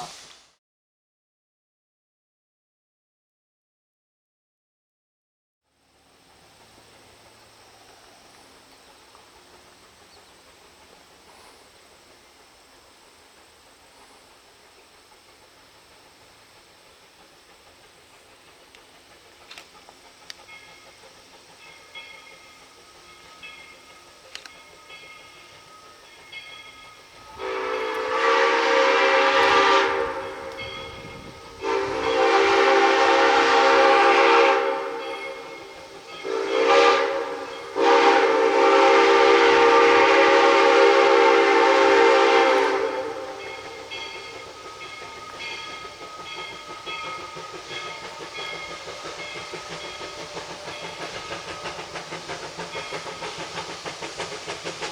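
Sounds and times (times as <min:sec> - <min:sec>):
steam locomotive whistle: 0:14.0 - 0:54.9
engine ticking: 0:43.5 - 0:54.9.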